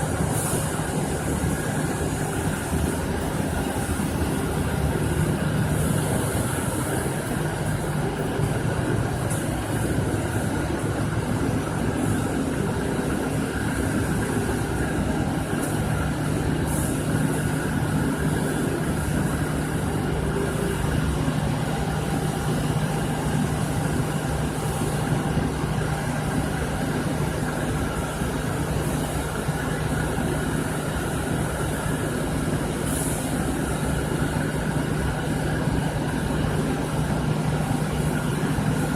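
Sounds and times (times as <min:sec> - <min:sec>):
steam machine humming: 0:00.0 - 0:38.9
high steam hiss: 0:25.8 - 0:35.3.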